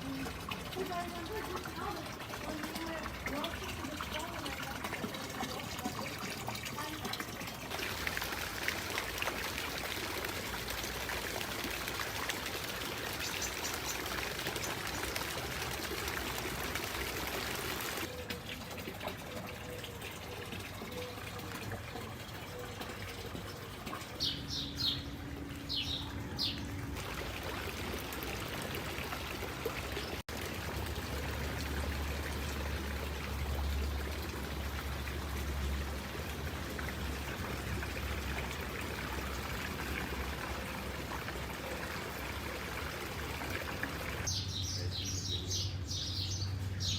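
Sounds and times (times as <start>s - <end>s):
fountain water trickling: 0.0s - 46.9s.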